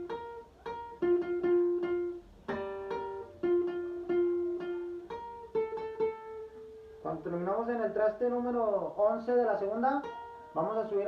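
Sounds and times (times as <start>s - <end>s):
guitar playing single-note riff: 0.0s - 7.4s, 10.0s - 10.8s.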